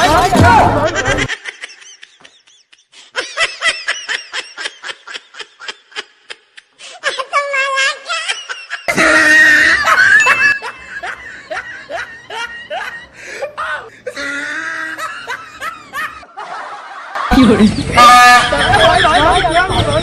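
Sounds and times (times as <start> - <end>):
person laughing: 8.0 - 16.3, 17.1 - 20.0.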